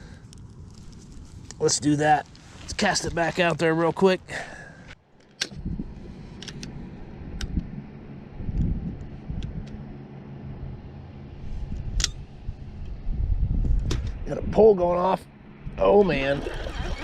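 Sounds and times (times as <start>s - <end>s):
low motor hum: 4.2s - 17.0s.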